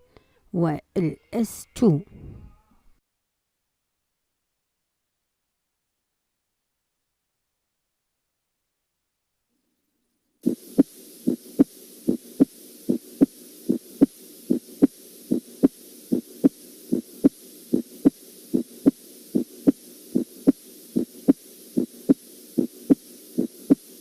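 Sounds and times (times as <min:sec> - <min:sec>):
faint steady hiss: 0:09.4 - 0:24.0
heartbeat lub-dub: 0:10.4 - 0:24.0.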